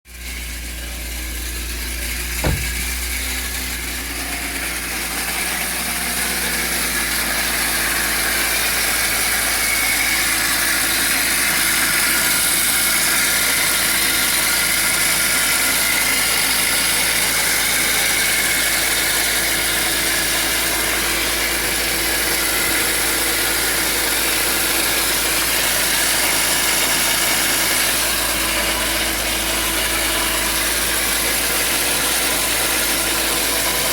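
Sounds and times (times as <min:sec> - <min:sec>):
car engine idling: 0:00.5 - 0:05.4.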